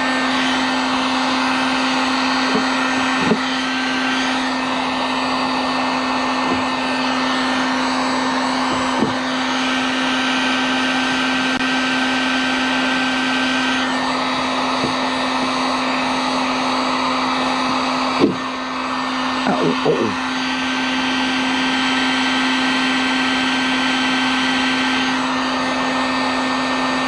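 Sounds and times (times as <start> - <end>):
heat gun blower running: 0.0 - 27.0.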